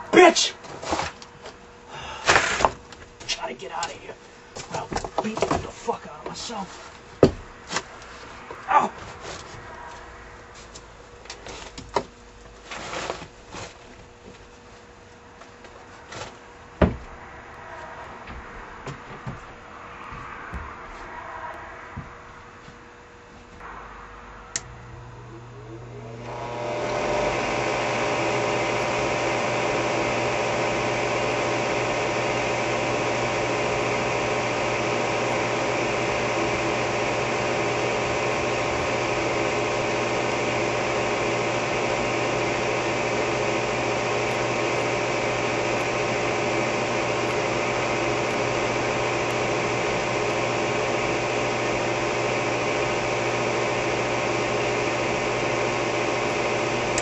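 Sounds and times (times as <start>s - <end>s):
exhaust motor humming: 23.6s - 57.0s.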